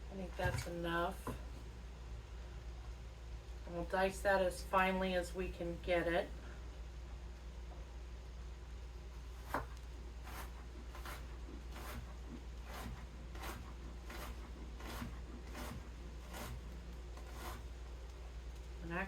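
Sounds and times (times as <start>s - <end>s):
steady low hum: 0.0s - 19.0s
knife chopping on cutting board: 9.4s - 9.7s.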